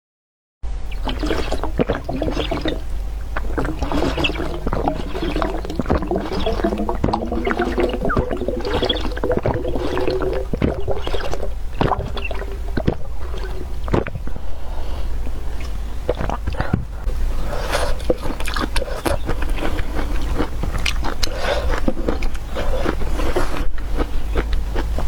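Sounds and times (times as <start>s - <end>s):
pitched sucking tone: 0.9s - 14.1s
wet noodles squelching: 0.9s - 16.8s, 17.4s - 24.9s.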